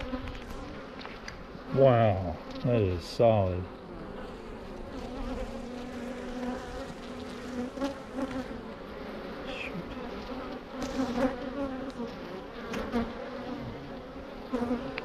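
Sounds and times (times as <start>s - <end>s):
honeybees buzzing: 0.0s - 15.0s.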